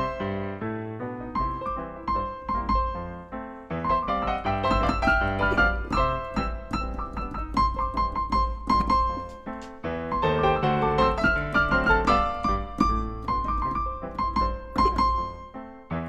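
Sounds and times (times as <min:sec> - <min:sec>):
piano music: 0:00.0 - 0:16.0.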